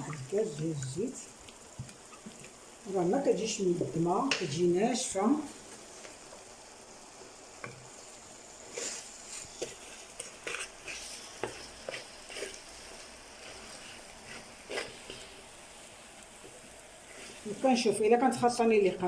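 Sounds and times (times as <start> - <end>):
faint sizzle: 0.0 - 19.0
spoon scraping frying pan: 1.8 - 2.7, 7.6 - 15.5.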